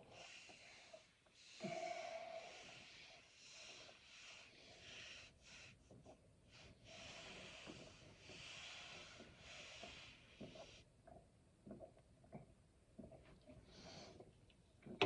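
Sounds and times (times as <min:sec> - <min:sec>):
faint breathing: 0:00.0 - 0:10.9.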